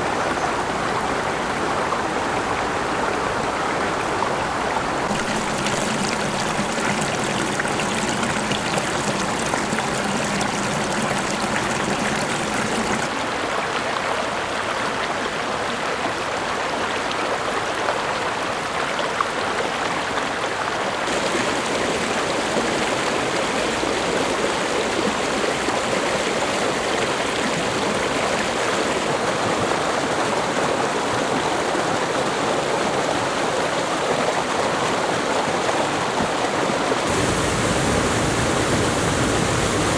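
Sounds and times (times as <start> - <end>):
waterfall rushing: 5.1 - 13.1, 37.1 - 39.9.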